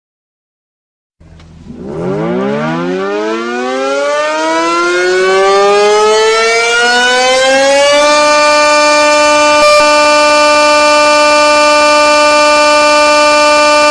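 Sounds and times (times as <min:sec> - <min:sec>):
siren winding up: 0:01.5 - 0:13.9.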